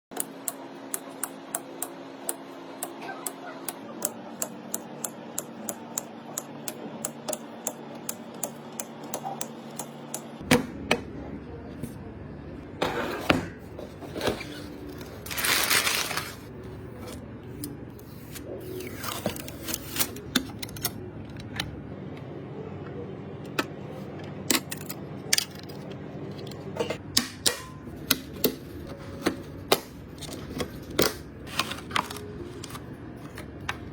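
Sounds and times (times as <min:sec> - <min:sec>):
computer parts clicking: 0:00.1 - 0:10.4.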